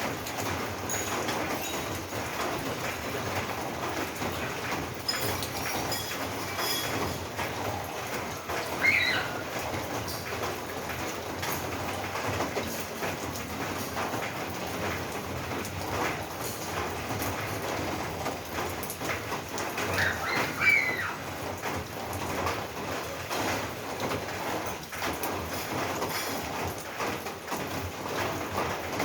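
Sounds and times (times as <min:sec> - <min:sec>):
rain on a roof: 0:00.0 - 0:29.0
bird chirping: 0:08.8 - 0:09.4.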